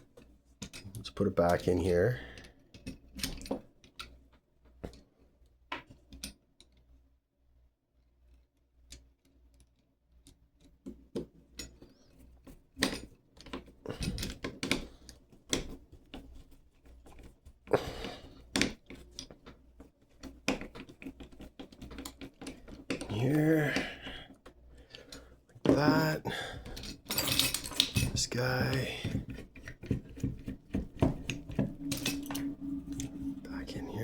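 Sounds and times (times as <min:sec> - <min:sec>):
metal lock parts clicking: 0:26.6 - 0:28.5, 0:31.3 - 0:32.5.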